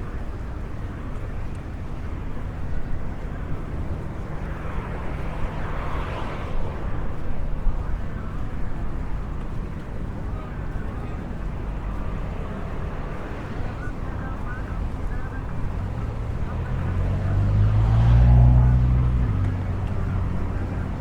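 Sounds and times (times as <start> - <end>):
low urban rumble: 0.0 - 21.0
vehicle passing: 3.3 - 9.9, 11.2 - 21.0.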